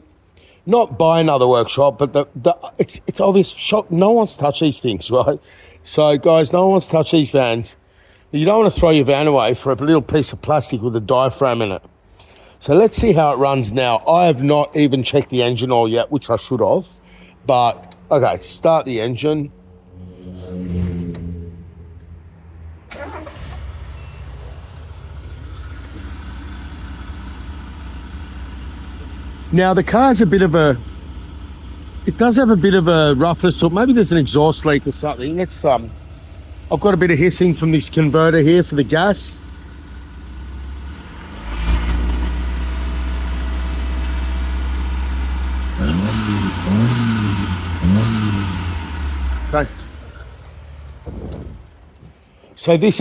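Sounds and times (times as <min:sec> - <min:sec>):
van engine starting and idling: 0:22.9 - 0:52.1.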